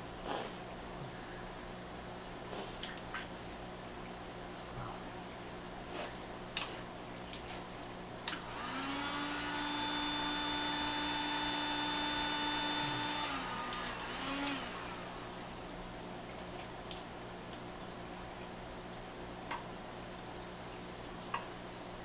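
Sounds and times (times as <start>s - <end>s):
heat gun fan whining: 8.3s - 15.6s.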